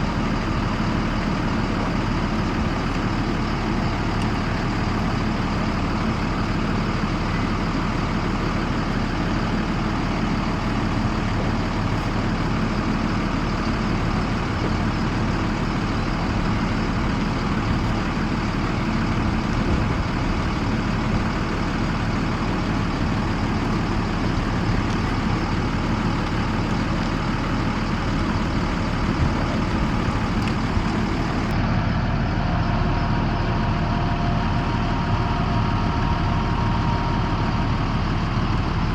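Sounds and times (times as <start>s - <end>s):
bus engine idling: 0.0s - 38.9s.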